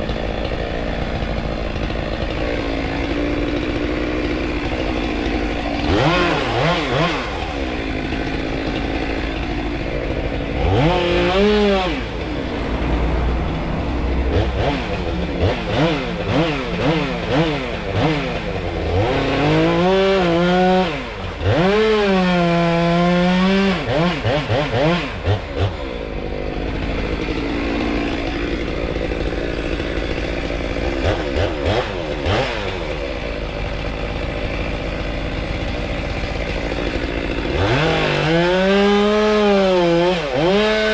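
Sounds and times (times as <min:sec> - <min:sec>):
chainsaw revving: 0:00.0 - 0:40.9.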